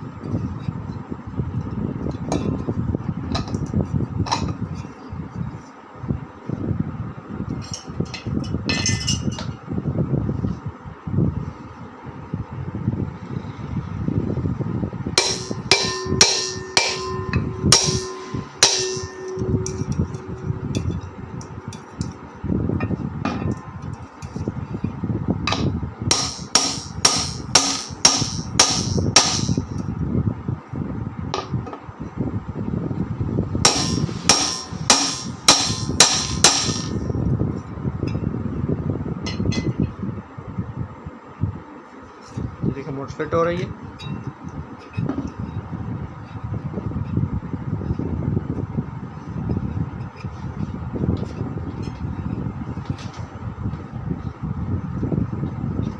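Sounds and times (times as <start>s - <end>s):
hammer knocking on metal: 15.2s - 20.9s.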